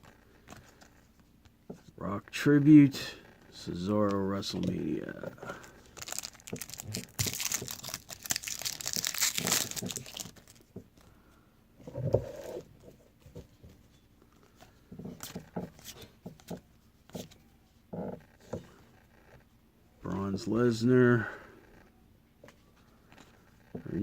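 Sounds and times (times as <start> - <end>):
plastic wrapper tearing and crinkling: 5.6 - 10.7.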